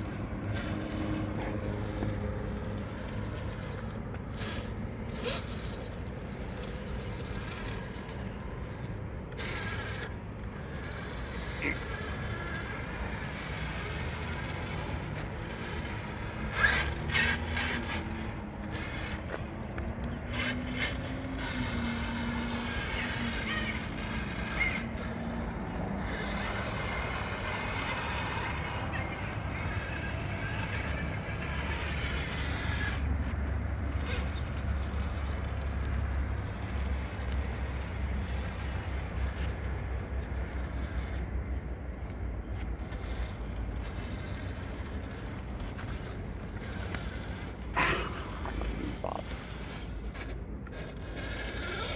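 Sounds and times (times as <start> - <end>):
electric motor whining: 0.0 - 39.7.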